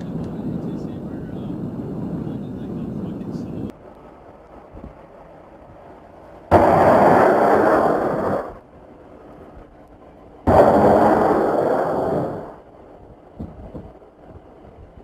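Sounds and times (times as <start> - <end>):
explosions rumbling: 0.0 - 3.7, 6.5 - 8.7, 10.5 - 12.7.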